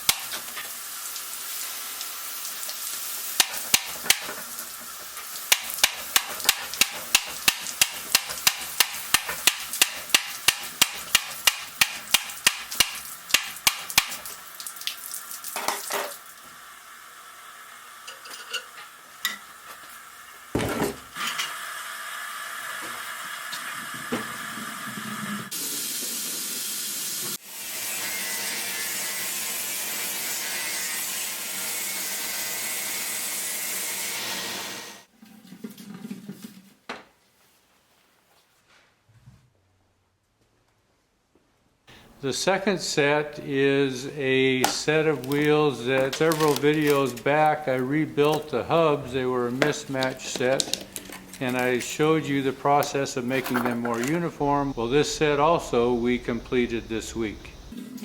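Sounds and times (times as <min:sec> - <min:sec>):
hiss of water and steam: 0:00.0 - 0:14.6, 0:21.2 - 0:28.0, 0:54.3 - 0:58.0.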